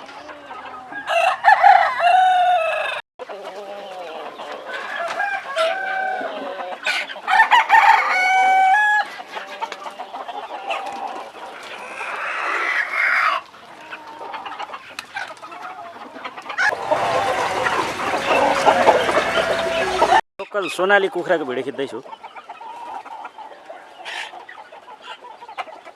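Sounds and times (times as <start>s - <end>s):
chickens clucking: 0.0s - 25.9s
rooster crowing: 0.1s - 3.0s, 4.6s - 9.1s, 16.6s - 20.2s.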